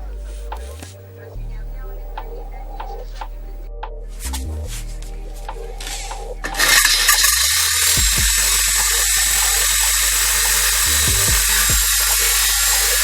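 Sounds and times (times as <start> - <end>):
angle grinder running: 6.5 - 13.0.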